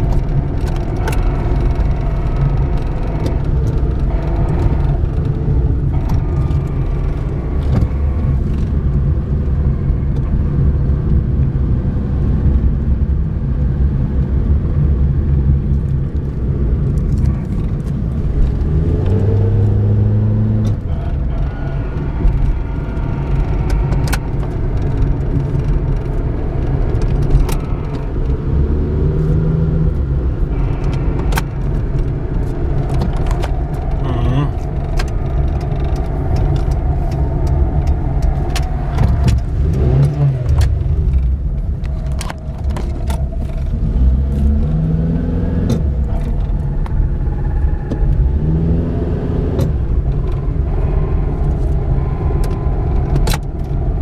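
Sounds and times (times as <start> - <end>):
engine and road rumble: 0.0 - 54.0
sliding pitched whine: 17.2 - 54.0.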